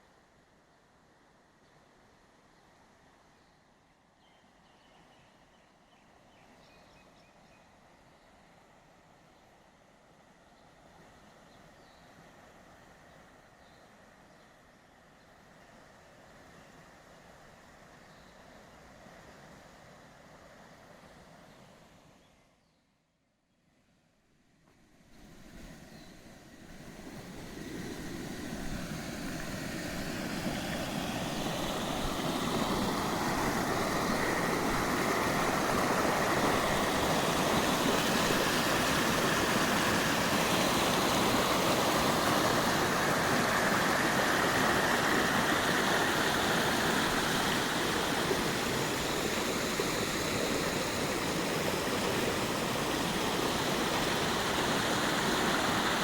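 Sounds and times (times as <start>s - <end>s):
rushing water: 25.1s - 56.0s.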